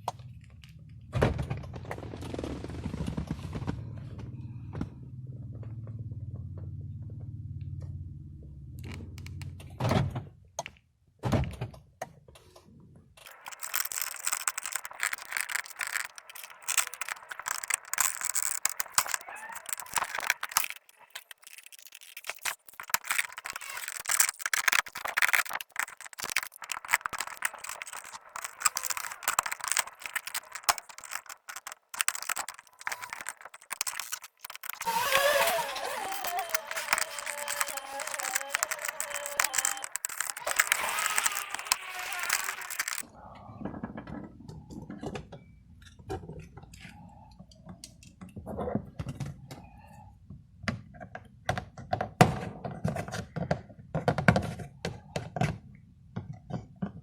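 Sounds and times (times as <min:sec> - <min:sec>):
clicking clattering and rattling: 0:13.2 - 0:43.1.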